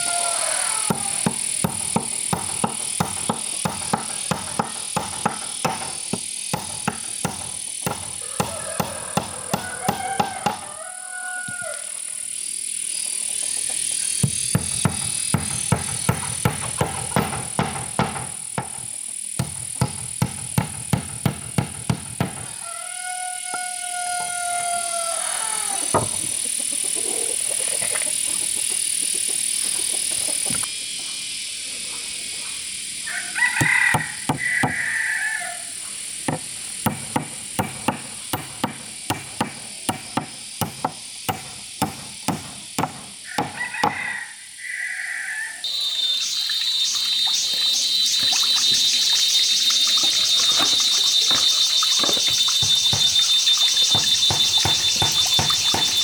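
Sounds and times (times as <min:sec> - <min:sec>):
pulsing high buzzing hiss: 0:00.0 - 0:10.6, 0:45.7 - 0:56.0
sharp knocks: 0:00.9 - 0:10.6, 0:14.2 - 0:22.5, 0:36.3 - 0:44.0, 0:49.9 - 0:56.0
short chirping calls: 0:45.6 - 0:56.0
steady high hiss: 0:45.7 - 0:56.0.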